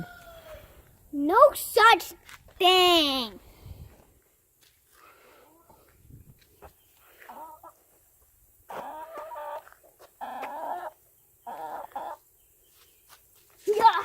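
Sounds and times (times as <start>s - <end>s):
chickens clucking: 5.5s - 12.4s.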